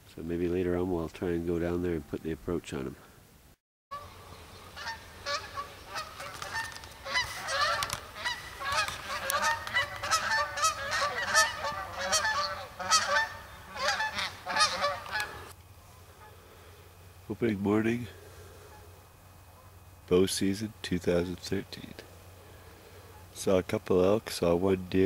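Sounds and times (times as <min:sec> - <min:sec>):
geese honking: 0:03.9 - 0:16.8, 0:18.2 - 0:19.8, 0:22.4 - 0:23.4.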